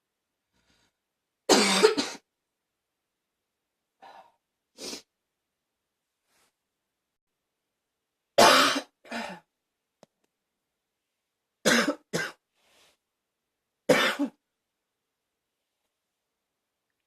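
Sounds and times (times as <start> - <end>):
person barking cough: 8.4 - 9.4, 11.7 - 12.4, 13.9 - 14.4.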